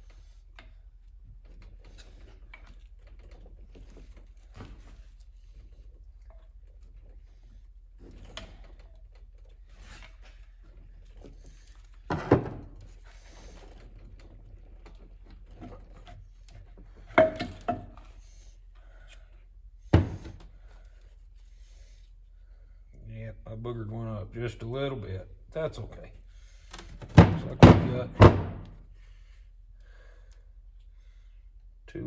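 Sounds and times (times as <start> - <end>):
metal parts knocking on workbench: 17.2 - 18.0.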